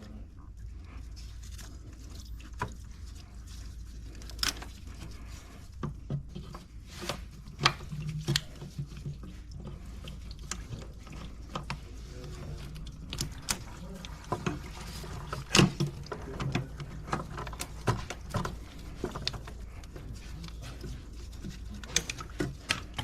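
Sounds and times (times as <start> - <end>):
low steady hum: 0.0 - 23.0.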